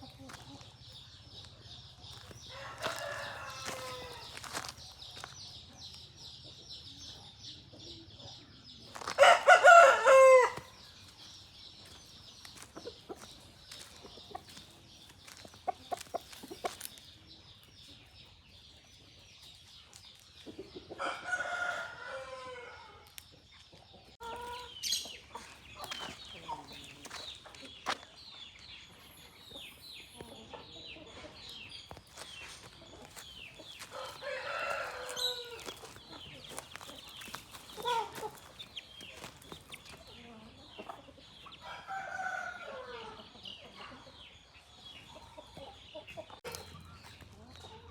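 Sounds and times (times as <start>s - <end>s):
chickens clucking: 0.0s - 47.9s
rooster crowing: 2.5s - 4.4s, 9.2s - 10.7s, 33.8s - 35.8s.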